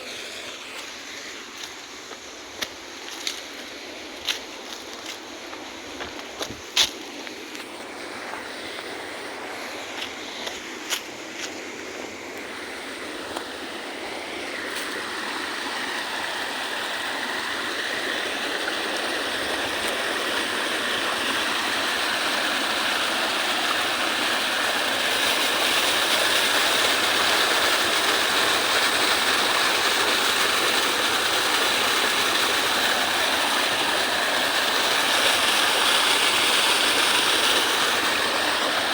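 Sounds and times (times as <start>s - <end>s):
waterfall roaring: 12.2s - 38.9s.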